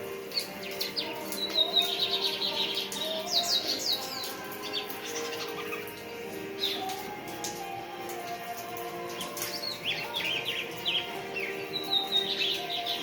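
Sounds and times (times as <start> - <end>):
bird singing in background: 0.0 - 7.1, 9.0 - 13.0.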